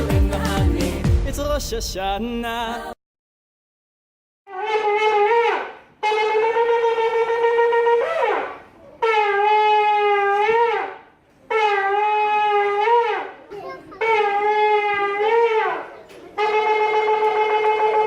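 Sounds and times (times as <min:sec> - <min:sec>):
shofar blasts: 0:04.5 - 0:13.4, 0:14.0 - 0:18.0.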